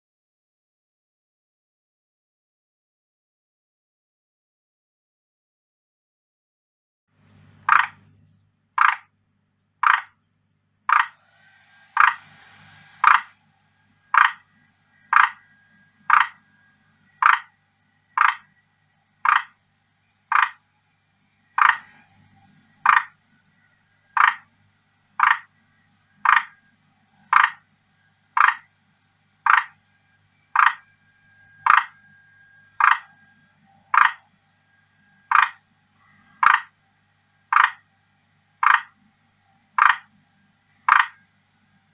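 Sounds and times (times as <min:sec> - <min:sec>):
tree frog croaking: 0:07.6 - 0:08.1, 0:08.8 - 0:09.1, 0:09.8 - 0:10.2, 0:10.9 - 0:11.2, 0:12.0 - 0:12.2, 0:13.0 - 0:13.4, 0:14.1 - 0:16.5, 0:17.1 - 0:18.6, 0:19.2 - 0:19.6, 0:20.3 - 0:20.6, 0:21.5 - 0:22.1, 0:22.8 - 0:23.2, 0:24.1 - 0:24.5, 0:25.2 - 0:25.6, 0:26.2 - 0:26.6, 0:27.2 - 0:27.6, 0:28.3 - 0:28.7, 0:29.4 - 0:29.8, 0:30.5 - 0:30.9, 0:31.6 - 0:32.0, 0:32.8 - 0:33.2, 0:33.8 - 0:34.3, 0:35.3 - 0:36.8, 0:37.5 - 0:37.8, 0:38.6 - 0:39.0, 0:39.7 - 0:40.2, 0:40.8 - 0:41.2.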